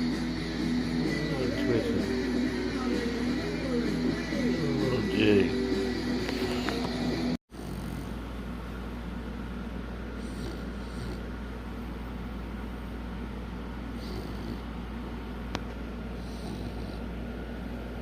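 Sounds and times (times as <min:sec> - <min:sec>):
steady low hum: 0:00.0 - 0:18.0
dog snoring faintly: 0:06.2 - 0:08.2, 0:10.2 - 0:12.1, 0:13.8 - 0:14.8, 0:16.1 - 0:17.2.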